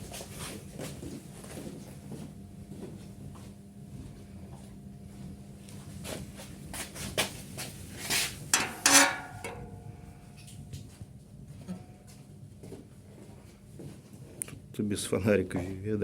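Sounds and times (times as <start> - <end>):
ringing metallic clatter: 8.6 - 9.8.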